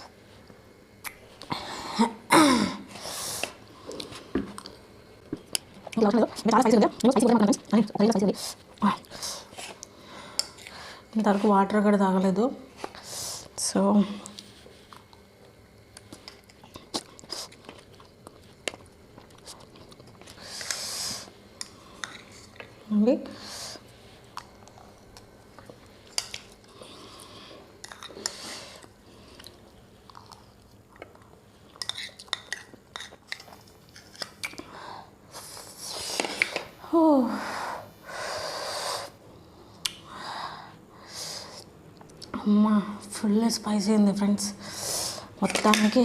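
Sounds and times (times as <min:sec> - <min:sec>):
woman cough-like vocal sound: 0:02.0 - 0:02.8
person chewing crunchy food: 0:14.3 - 0:22.7, 0:24.2 - 0:34.7
woman breathing in hissing breaths: 0:20.4 - 0:22.0, 0:23.3 - 0:24.1, 0:37.3 - 0:41.7, 0:44.6 - 0:45.4.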